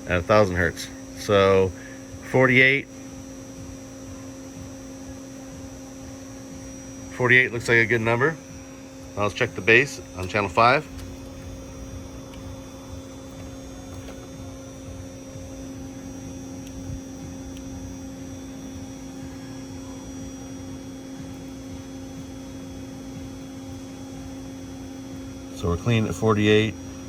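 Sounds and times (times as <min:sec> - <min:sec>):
steady electrical hum: 0:00.0 - 0:27.0.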